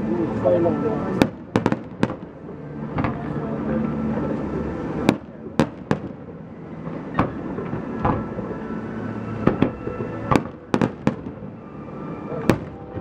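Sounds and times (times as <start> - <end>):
continuous fireworks display noise: 0.0 - 13.0
fireworks bangs: 1.1 - 2.3, 5.0 - 6.2, 9.4 - 13.0.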